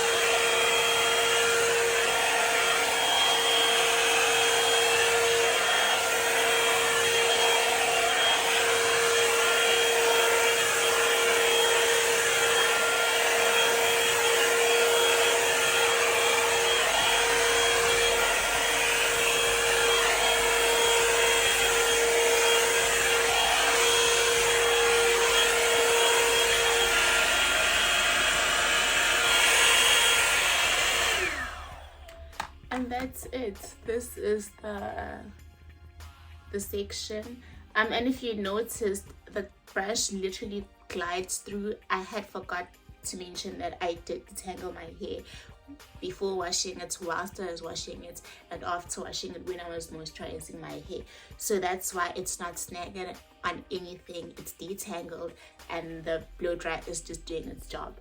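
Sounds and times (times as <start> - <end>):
high motor whine: 0.0 - 32.2
hair dryer blowing air: 0.0 - 33.9.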